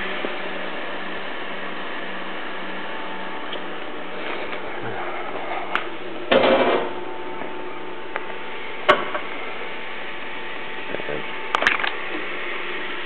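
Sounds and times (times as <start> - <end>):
embroidery machine humming: 0.0 - 13.0.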